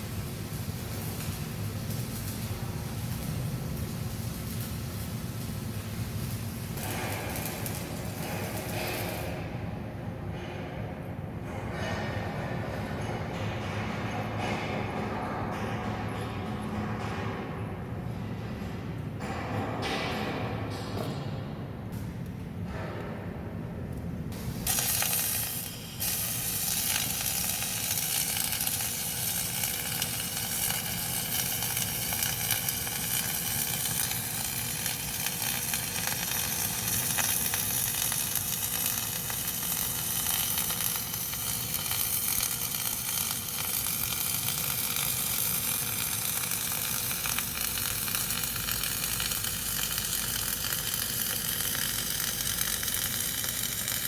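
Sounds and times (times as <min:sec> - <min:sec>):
welding arc crackling: 0:00.0 - 0:09.6, 0:24.3 - 0:54.0.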